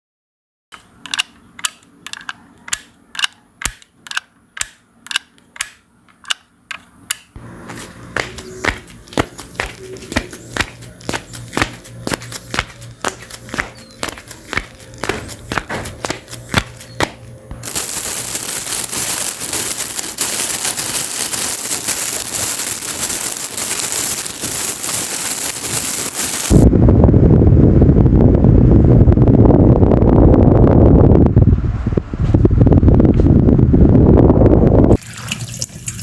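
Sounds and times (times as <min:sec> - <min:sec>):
loud crackling hiss: 0:17.6 - 0:26.6.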